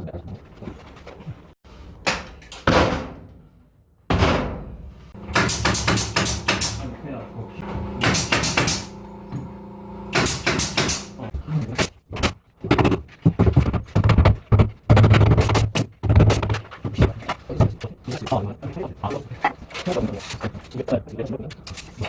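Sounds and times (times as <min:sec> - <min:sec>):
sharp knocks and clatter: 0:05.2 - 0:06.9, 0:07.7 - 0:09.5, 0:10.1 - 0:11.2.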